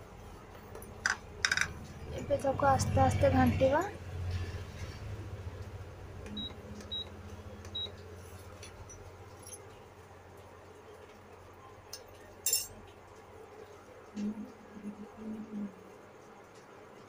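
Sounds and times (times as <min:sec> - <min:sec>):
induction cooktop humming: 0:00.0 - 0:17.0
spoon clinking against pot: 0:11.9 - 0:12.8.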